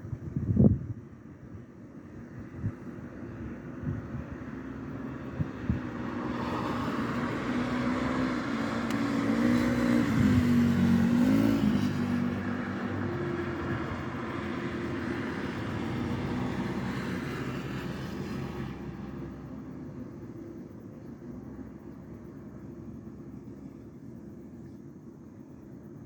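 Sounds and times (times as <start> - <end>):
traffic hum: 0.1 - 26.0
car passing by: 2.7 - 20.8.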